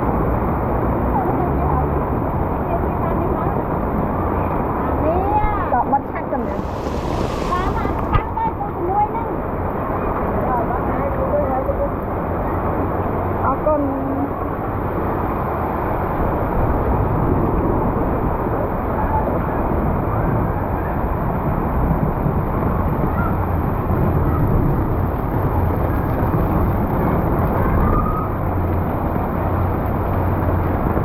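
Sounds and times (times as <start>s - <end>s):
heavy rain and water: 6.4s - 9.2s
traffic rumble: 6.4s - 9.2s.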